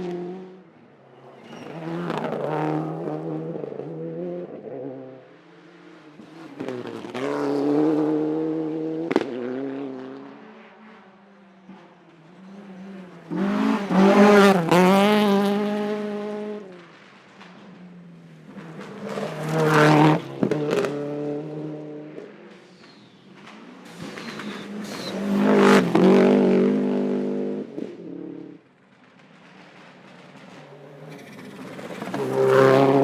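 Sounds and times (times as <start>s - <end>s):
rally car engine revving: 1.5s - 5.2s, 12.6s - 16.6s, 18.5s - 22.3s, 23.8s - 28.6s, 30.4s - 33.0s.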